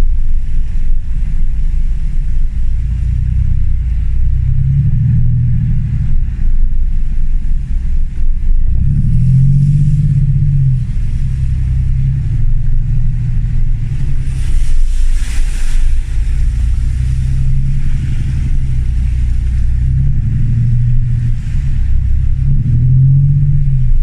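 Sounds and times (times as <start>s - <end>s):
diesel engine revving off-road: 0.0s - 24.0s.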